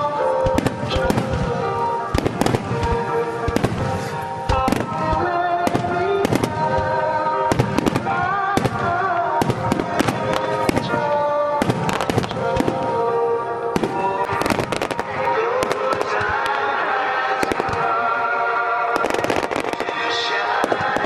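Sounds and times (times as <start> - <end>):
fireworks bursting with bangs: 0.0 - 21.0
music with held notes: 0.0 - 21.0.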